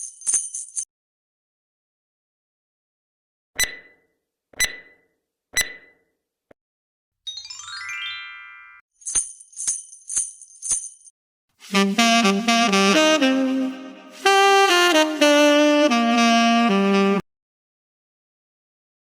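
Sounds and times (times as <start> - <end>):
jingle bells shaking: 0.0 - 0.9, 7.3 - 11.1
bright chime sweep: 7.3 - 8.8
saxophone playing: 11.6 - 17.2.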